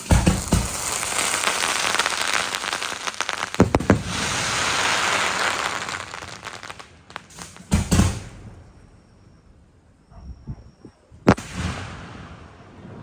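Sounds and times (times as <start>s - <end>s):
fireworks crackling: 0.0s - 8.7s, 11.3s - 13.0s
deep firework booms: 0.0s - 9.1s, 11.2s - 13.0s.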